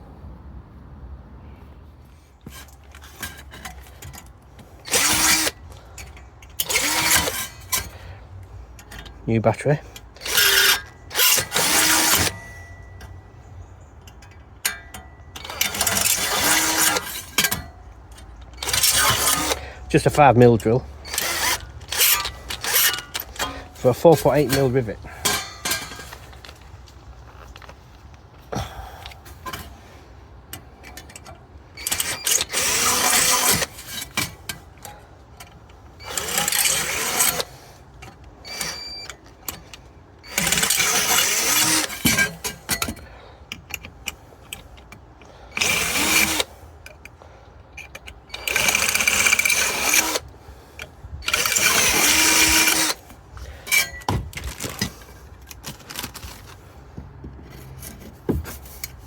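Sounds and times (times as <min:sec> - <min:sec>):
cordless drill drilling steel: 0:04.9 - 0:05.7, 0:06.6 - 0:08.0, 0:10.2 - 0:12.7, 0:15.4 - 0:17.6, 0:18.6 - 0:24.9, 0:31.8 - 0:34.2, 0:36.0 - 0:37.7, 0:38.4 - 0:39.1, 0:40.2 - 0:42.4, 0:45.5 - 0:46.6, 0:48.3 - 0:50.3, 0:51.2 - 0:53.1
small clicks and handling noise: 0:30.5 - 0:59.0.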